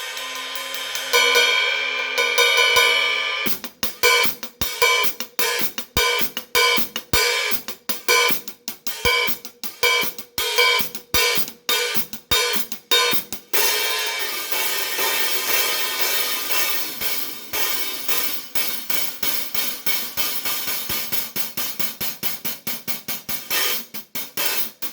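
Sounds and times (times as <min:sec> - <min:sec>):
cymbal strokes: 0:00.0 - 0:04.2.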